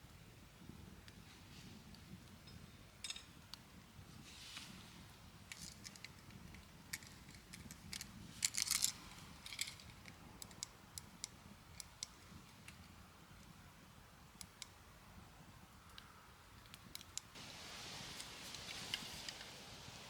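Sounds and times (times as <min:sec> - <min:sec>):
small clicks and light clatter: 0:05.5 - 0:13.6, 0:15.9 - 0:17.4.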